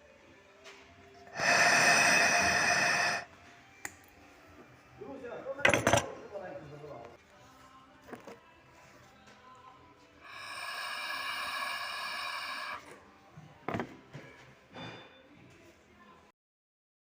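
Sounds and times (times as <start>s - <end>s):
steady hiss: 1.4s - 3.3s, 10.3s - 12.8s.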